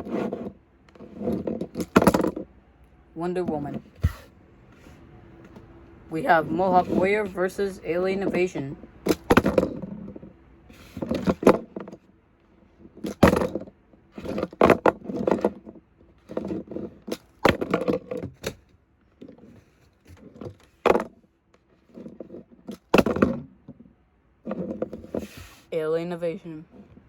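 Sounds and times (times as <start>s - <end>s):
toy trucks clattering and scraping: 0.0s - 2.5s, 6.5s - 12.1s, 12.7s - 25.6s.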